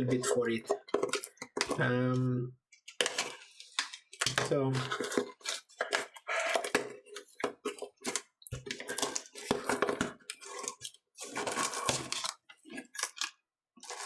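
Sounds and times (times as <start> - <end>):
packaging tearing and crinkling: 10.4 - 14.0.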